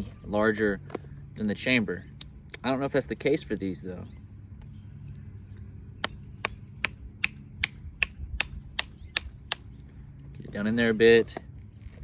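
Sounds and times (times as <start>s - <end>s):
sharp taps on pistol ball: 6.0s - 9.7s.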